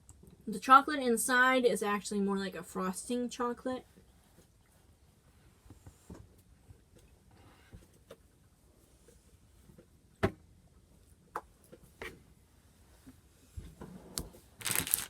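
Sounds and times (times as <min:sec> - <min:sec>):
plastic packaging crinkling: 0:14.6 - 0:15.0.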